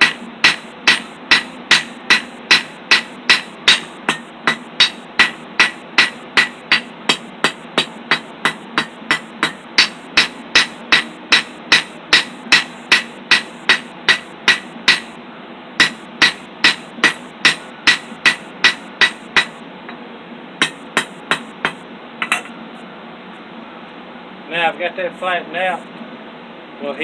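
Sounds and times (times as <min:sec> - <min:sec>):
hammer striking steel on anvil: 0:00.0 - 0:15.1, 0:15.8 - 0:19.6, 0:20.6 - 0:22.5.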